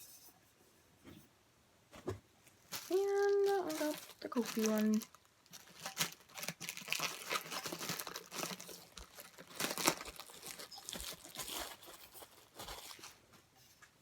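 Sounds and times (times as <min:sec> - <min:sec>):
plastic packaging crinkling: 0:02.6 - 0:13.3.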